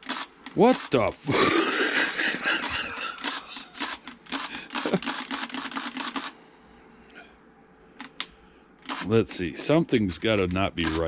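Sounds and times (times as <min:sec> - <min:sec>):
battery chainsaw clicking and rattling: 0:02.4 - 0:06.3.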